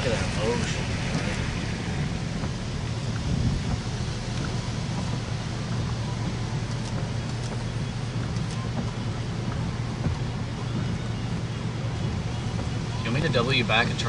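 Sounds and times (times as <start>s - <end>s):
storm wind hiss: 0.0s - 14.0s
vehicle low rumble: 0.0s - 14.0s.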